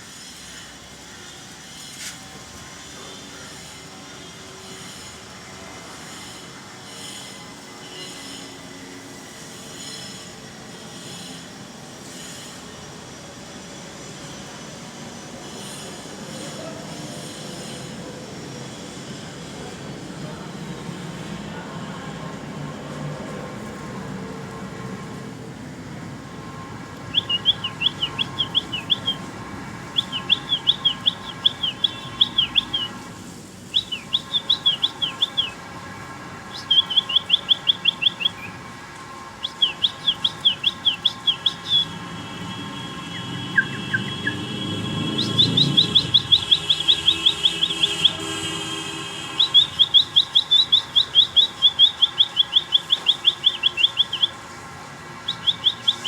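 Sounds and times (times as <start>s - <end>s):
baby birds chirping: 26.7s - 35.6s, 36.5s - 38.6s, 39.4s - 54.4s, 55.2s - 56.0s.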